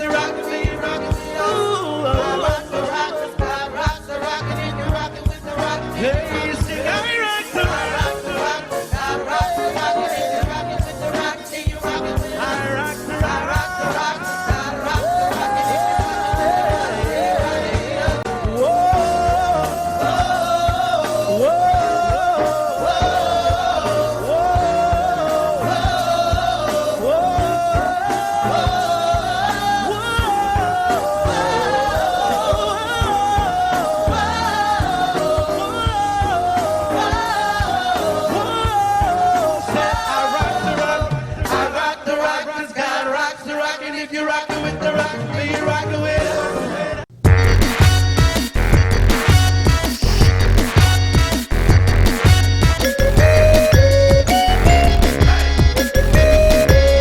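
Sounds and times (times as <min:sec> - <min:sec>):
bass: 0:00.0 - 0:41.8, 0:44.5 - 0:57.0
person singing gospel song: 0:00.0 - 0:47.1, 0:52.8 - 0:57.0
steady drum beat: 0:14.5 - 0:21.2, 0:47.2 - 0:57.0.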